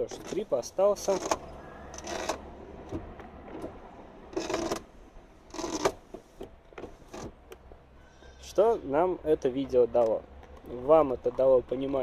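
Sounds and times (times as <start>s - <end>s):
power window squeaking: 0.0s - 3.0s, 3.6s - 4.9s, 5.5s - 6.2s.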